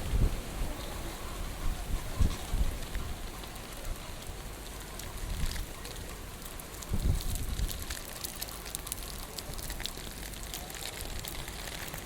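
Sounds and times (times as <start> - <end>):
wind gusts buffeting microphone: 0.0 - 7.9.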